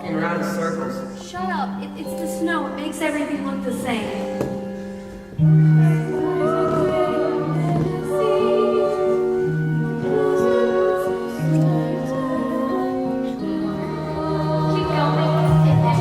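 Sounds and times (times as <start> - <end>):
instrumental accompaniment: 0.0 - 16.0.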